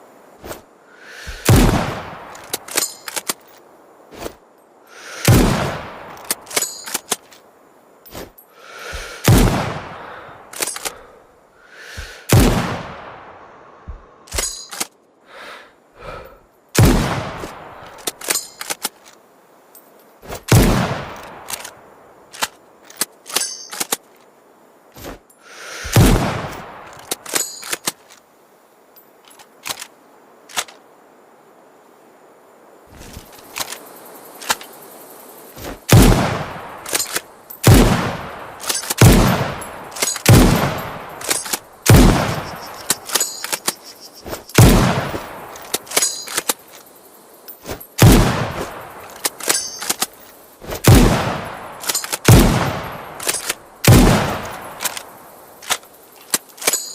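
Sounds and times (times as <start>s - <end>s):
rifle shots echoing: 1.4s - 3.3s, 5.2s - 6.8s, 9.2s - 10.0s, 12.3s - 13.3s, 16.8s - 17.7s, 20.5s - 21.7s, 25.9s - 26.9s, 35.9s - 43.6s, 44.6s - 46.3s, 48.0s - 50.0s, 50.8s - 55.0s
rifle bolt metallic clicks: 2.3s - 3.6s, 6.2s - 7.5s, 10.5s - 11.0s, 14.3s - 15.0s, 17.8s - 19.2s, 20.5s - 24.3s, 25.9s - 28.2s, 29.2s - 30.8s, 33.3s - 33.8s, 36.8s - 37.9s, 38.6s - 46.8s, 49.0s - 51.1s, 51.8s - 56.9s.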